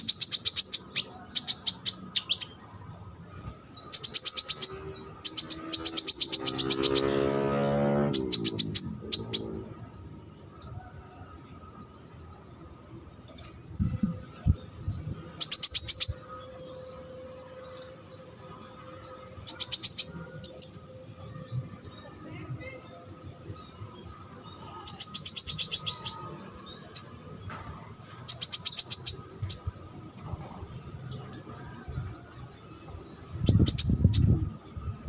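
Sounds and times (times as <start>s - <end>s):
bird trill: 0.0s - 35.0s
songbird chirping: 0.0s - 35.0s
low falling tone: 6.4s - 11.0s
faint steady high tone: 7.3s - 35.0s.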